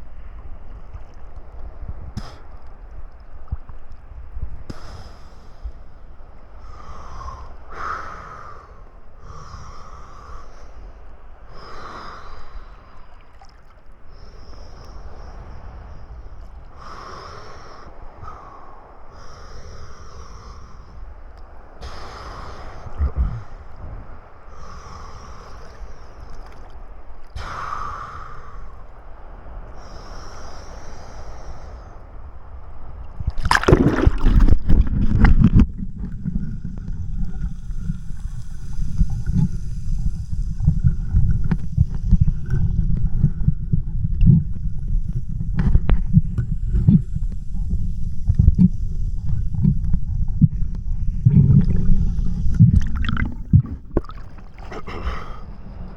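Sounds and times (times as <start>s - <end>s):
seawater sloshing and churning: 32.9s - 55.9s
wave rushing: 33.1s - 43.8s, 44.6s - 55.9s.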